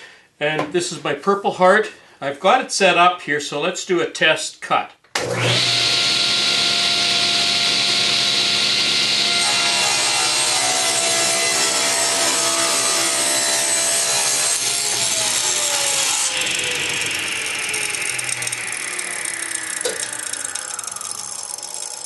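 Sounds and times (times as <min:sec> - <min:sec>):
power saw cutting wood: 0:05.2 - 0:22.0
saw blade winding down: 0:05.2 - 0:22.0.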